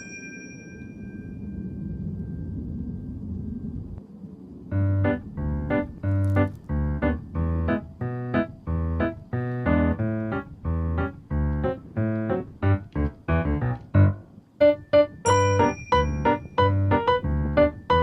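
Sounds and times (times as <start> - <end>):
bell-like notes: 0.0 - 2.7, 14.6 - 18.0
piano chords: 4.7 - 18.0
steady low beat: 4.7 - 18.0.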